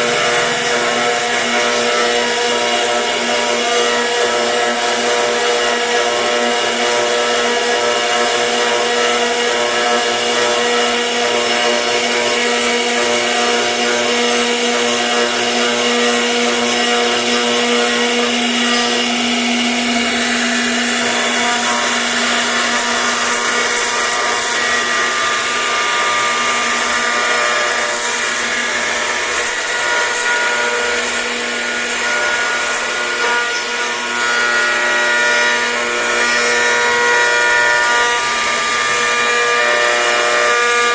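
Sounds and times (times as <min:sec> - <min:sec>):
bit cutting wood: 0:00.0 - 0:40.9
router spindle whine: 0:00.0 - 0:40.9.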